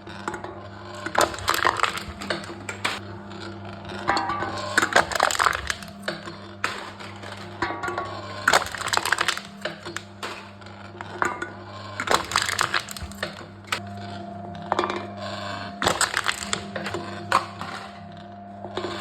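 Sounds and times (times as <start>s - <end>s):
steady low hum: 0.8s - 19.0s
cans crushed crunching: 1.1s - 3.0s, 4.8s - 7.6s, 8.4s - 10.5s, 12.0s - 13.8s, 15.8s - 17.5s.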